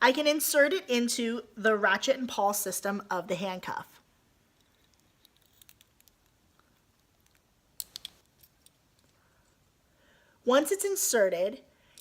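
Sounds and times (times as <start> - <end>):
handcuff metallic clicks and scrapes: 4.5 - 9.6.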